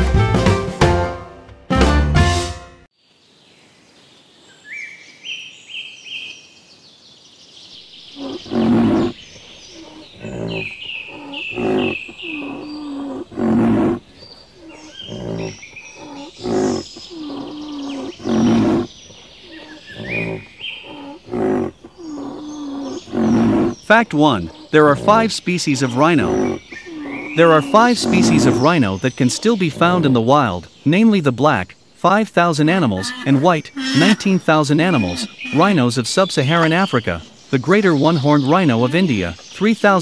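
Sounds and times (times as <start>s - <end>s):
small birds chirping: 2.9s - 40.0s
rhino calling: 8.0s - 40.0s.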